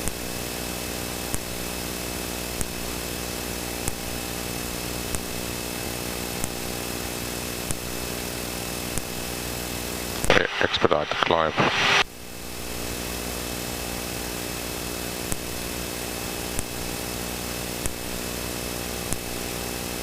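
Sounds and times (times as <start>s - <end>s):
jet engines and airflow hiss: 10.0s - 12.6s
low hum: 10.0s - 15.5s.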